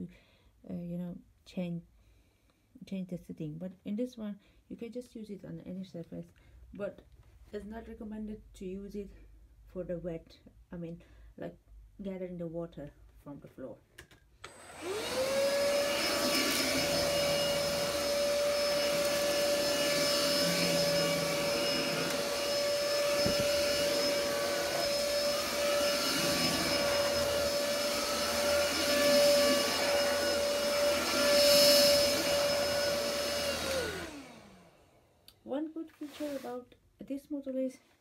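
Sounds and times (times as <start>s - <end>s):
vacuum motor whining: 14.4s - 35.0s.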